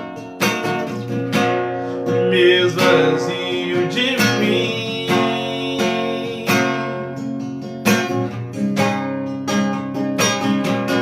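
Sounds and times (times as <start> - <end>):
acoustic guitar strumming chords: 0.0 - 11.0
person singing: 2.1 - 7.2.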